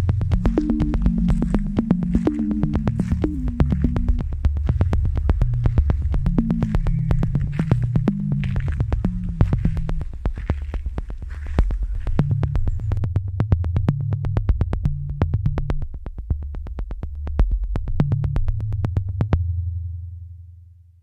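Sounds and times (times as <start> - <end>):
synthesizer bass line: 0.0 - 16.7
steady ticking beat: 0.0 - 19.6.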